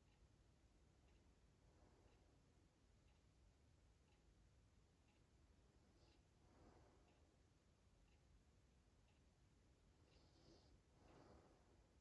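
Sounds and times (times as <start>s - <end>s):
faint ticks: 0.0s - 12.0s.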